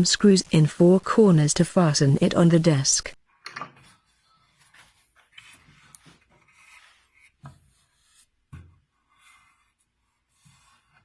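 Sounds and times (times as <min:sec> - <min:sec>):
faint scraping and rubbing: 0:03.8 - 0:11.0.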